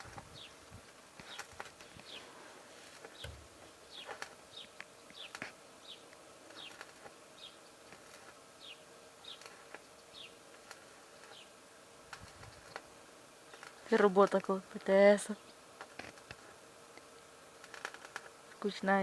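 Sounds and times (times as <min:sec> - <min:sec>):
small bird chirping: 0:00.0 - 0:02.3, 0:03.0 - 0:11.6, 0:12.2 - 0:15.7
faint steady hum: 0:00.0 - 0:19.0.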